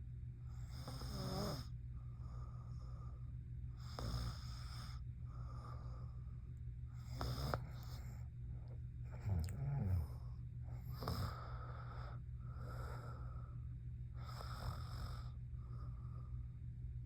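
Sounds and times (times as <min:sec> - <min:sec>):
steady low hum: 0:00.0 - 0:17.0
woman snoring: 0:00.7 - 0:01.7, 0:03.8 - 0:04.9, 0:07.0 - 0:07.9, 0:10.9 - 0:11.4, 0:14.2 - 0:15.4.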